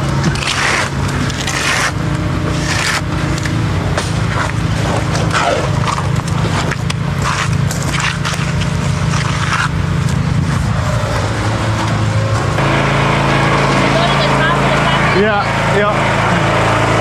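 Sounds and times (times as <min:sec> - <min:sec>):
engine running: 0:00.0 - 0:17.0
hand tools scraping wet concrete: 0:00.3 - 0:03.5.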